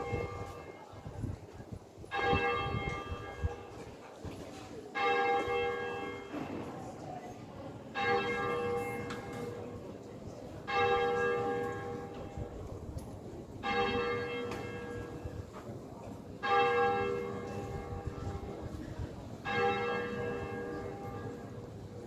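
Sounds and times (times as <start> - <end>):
church bell tolling: 2.1 - 3.8, 5.0 - 6.7, 8.0 - 9.8, 10.6 - 12.5, 13.6 - 15.5, 16.4 - 18.6, 19.4 - 22.0.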